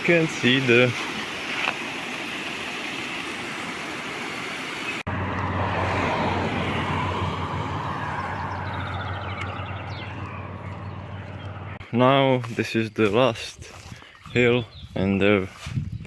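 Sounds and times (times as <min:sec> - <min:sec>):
water rushing through channel: 0:00.0 - 0:11.8.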